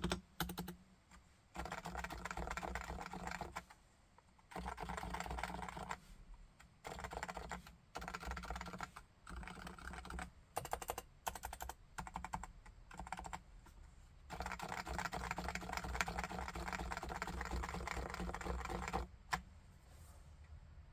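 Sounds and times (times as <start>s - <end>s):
typing on a keyboard: 0.0s - 0.8s, 1.6s - 3.7s, 4.5s - 6.0s, 6.8s - 13.4s, 14.3s - 19.4s.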